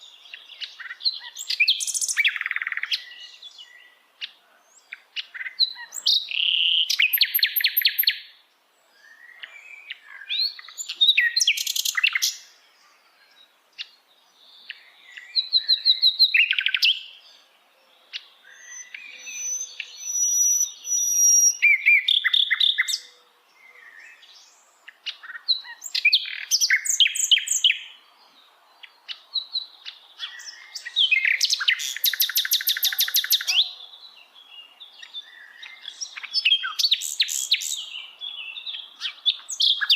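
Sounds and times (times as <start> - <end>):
flycatcher singing with trills: 4.9 - 8.3, 29.1 - 33.8.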